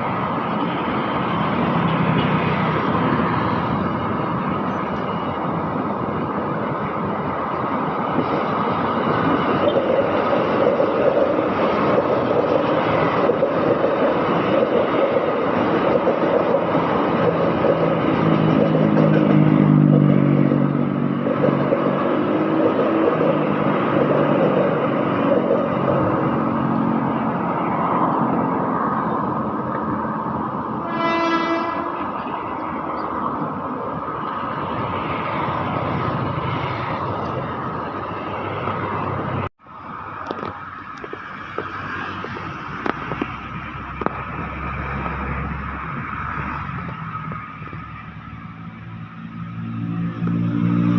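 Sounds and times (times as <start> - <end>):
train wheels rumbling on rails: 0.0 - 50.9
train horn toot: 30.8 - 32.3.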